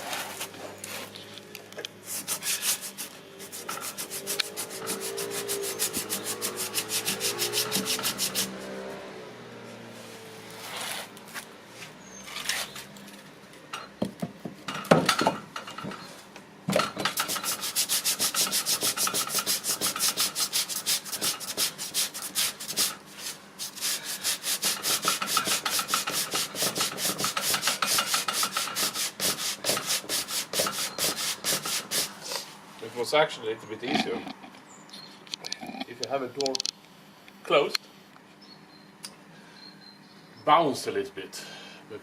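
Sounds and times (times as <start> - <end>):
sandpaper rubbing on wood: 2.0 - 8.7, 10.6 - 11.1, 17.2 - 32.4.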